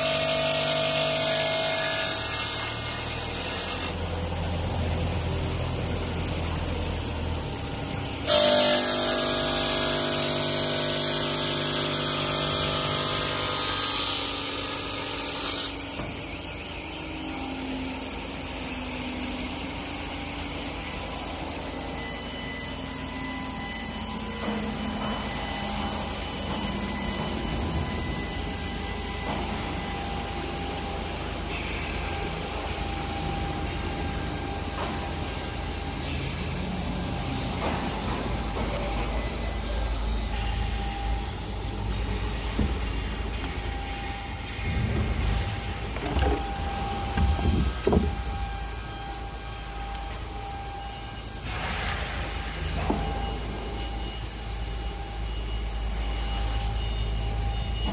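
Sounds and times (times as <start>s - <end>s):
cutting machine humming and whining: 0.0s - 57.9s
faint steady tones: 0.0s - 57.9s.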